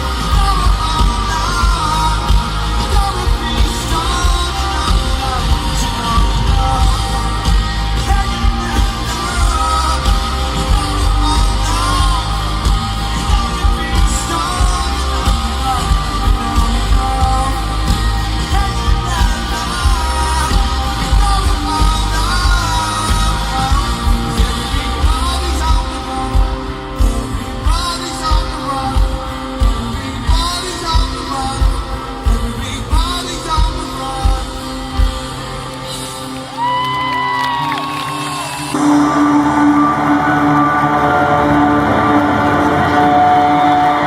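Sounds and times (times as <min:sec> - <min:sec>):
heavy drums and bass: 0:00.0 - 0:36.2
live rock band playing: 0:00.0 - 0:44.0
person singing: 0:00.0 - 0:44.0.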